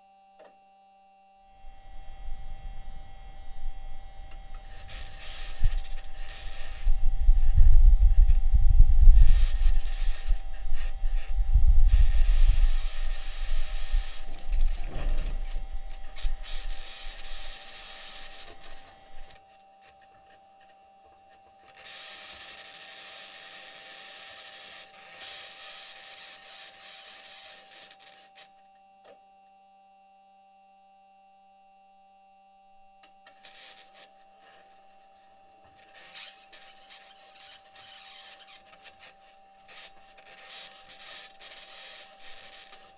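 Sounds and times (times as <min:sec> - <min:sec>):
high-pitched scratching: 0:01.7 - 0:19.4, 0:35.8 - 0:42.9
wheels rumbling over rocky ground: 0:13.7 - 0:16.8.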